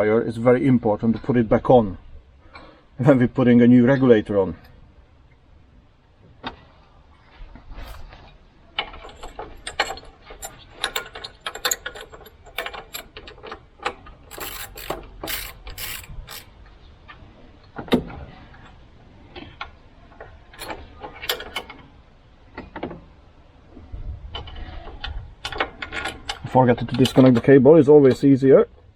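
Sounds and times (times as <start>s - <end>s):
ratchet spanner clicking: 14.3s - 16.5s.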